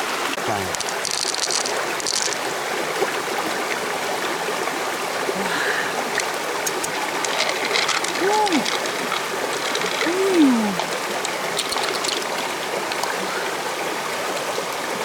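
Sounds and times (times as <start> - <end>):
floodwater rushing: 0.2 - 15.0
water hissing: 5.4 - 13.6.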